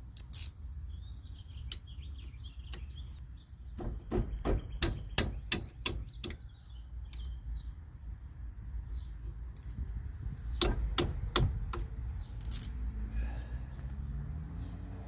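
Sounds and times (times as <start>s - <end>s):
birds chirping: 0.0s - 8.0s, 8.8s - 9.7s, 10.3s - 15.0s
ratcheting wrench clicking: 12.4s - 12.8s.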